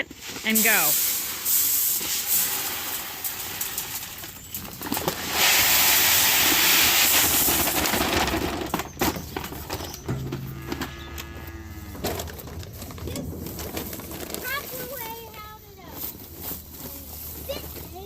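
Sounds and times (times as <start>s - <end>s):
grain pouring into hopper: 0.2s - 8.7s.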